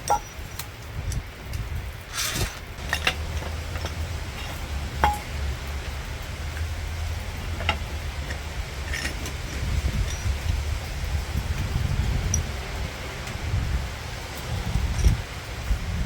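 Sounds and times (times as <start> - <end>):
metal tools clinking: 0.0 - 0.6, 2.0 - 5.4.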